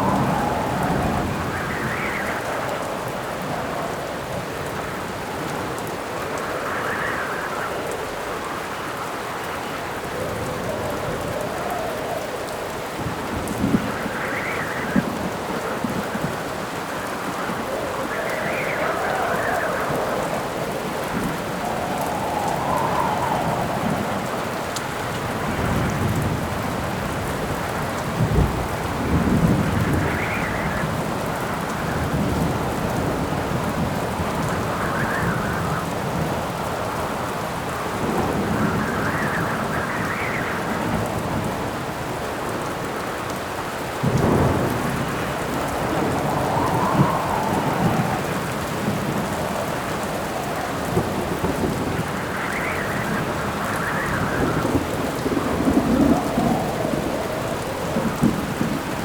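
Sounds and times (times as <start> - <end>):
low rumble of thunder: 0.0 - 7.7, 9.9 - 42.7, 43.9 - 59.0
heavy rain: 0.0 - 59.0
wind gusts: 0.0 - 59.0.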